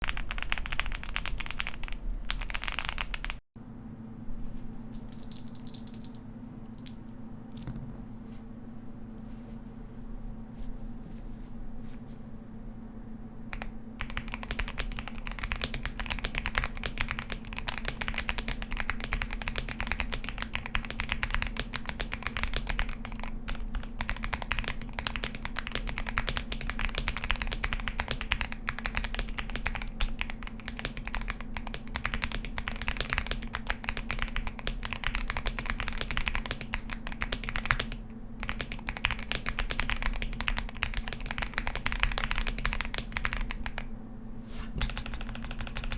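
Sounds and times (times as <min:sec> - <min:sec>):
mechanical keyboard typing: 0:00.0 - 0:03.4, 0:05.1 - 0:06.2, 0:13.5 - 0:43.9, 0:44.8 - 0:45.9
steady low hum: 0:00.0 - 0:45.9.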